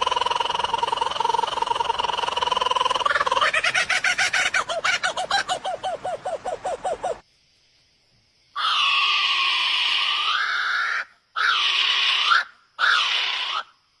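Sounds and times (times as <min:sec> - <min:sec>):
bird harsh calls: 0:00.0 - 0:07.2.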